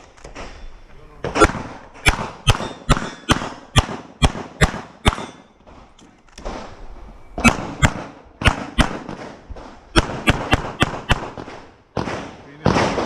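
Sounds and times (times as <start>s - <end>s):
pistol shots: 1.3s - 5.6s, 7.4s - 13.0s.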